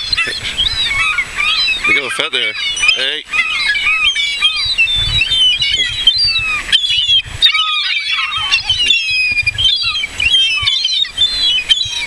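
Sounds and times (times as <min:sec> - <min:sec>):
gulls squawking: 0:00.0 - 0:12.0.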